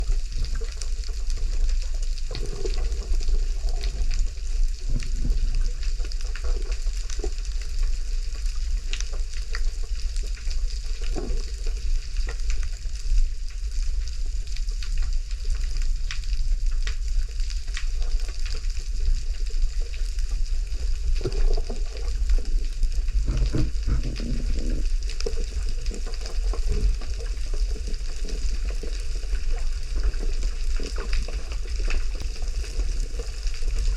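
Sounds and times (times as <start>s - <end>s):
dense crackle: 0.0s - 33.9s
low rumble of moving water: 0.0s - 33.9s.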